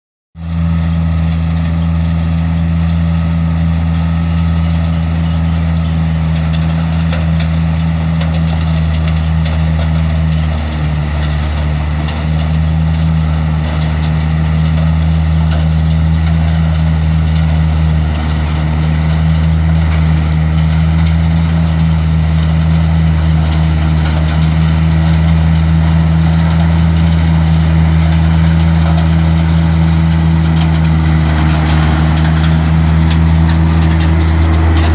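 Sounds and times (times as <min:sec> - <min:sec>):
combine harvester engine hum: 0:00.4 - 0:34.9.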